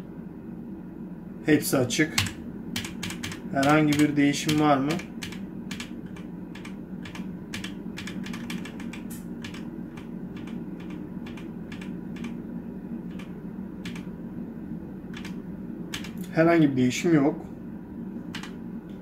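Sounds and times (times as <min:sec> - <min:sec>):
mechanical keyboard keys clacking: 0:02.1 - 0:12.4, 0:13.1 - 0:14.1, 0:15.1 - 0:16.3, 0:18.3 - 0:18.6.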